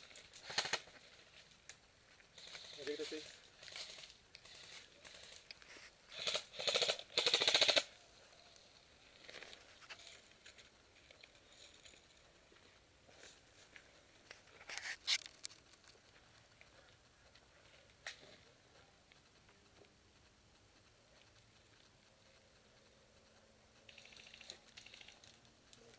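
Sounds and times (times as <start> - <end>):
airsoft gun firing bursts: 6.1 - 8.0.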